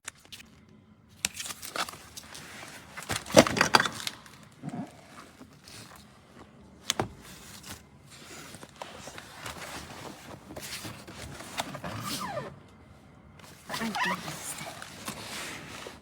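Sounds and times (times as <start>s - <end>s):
rustling: 1.4s - 12.5s, 13.4s - 16.0s.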